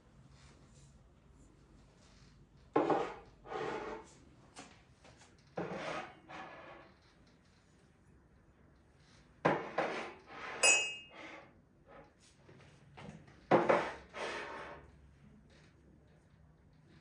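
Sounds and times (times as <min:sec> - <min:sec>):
glass ringing clink: 0:10.6 - 0:11.2.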